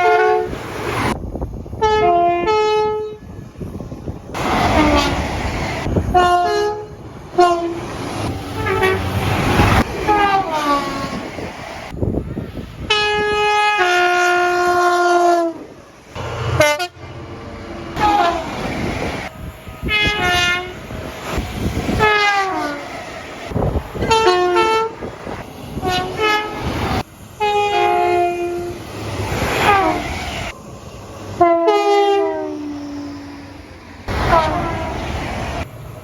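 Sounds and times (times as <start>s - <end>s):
train horn blasts: 0.0s - 0.6s, 1.8s - 3.4s, 4.4s - 5.3s, 6.0s - 7.9s, 8.5s - 9.2s, 10.0s - 11.3s, 12.8s - 17.2s, 18.0s - 18.6s, 19.4s - 20.9s, 22.0s - 22.9s, 24.0s - 25.1s, 25.8s - 26.8s, 27.4s - 28.9s, 29.6s - 30.1s, 31.4s - 33.4s, 34.1s - 35.0s.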